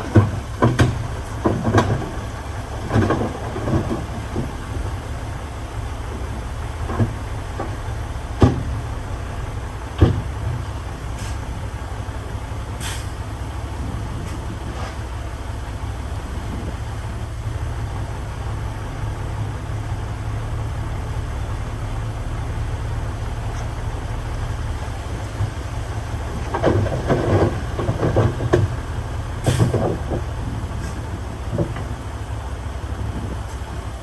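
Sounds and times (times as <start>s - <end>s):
irregular clattering and knocks: 0.0s - 5.1s, 6.6s - 10.9s, 23.5s - 32.2s
diesel engine droning: 0.0s - 34.0s.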